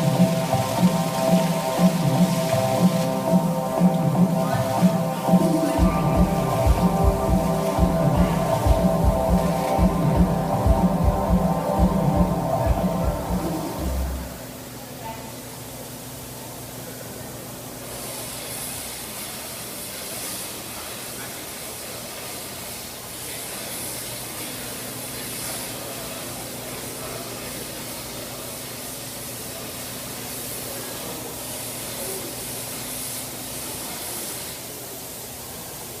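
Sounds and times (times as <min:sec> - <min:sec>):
low steady hum: 0:00.0 - 0:15.2
hissing water spray: 0:17.8 - 0:36.0.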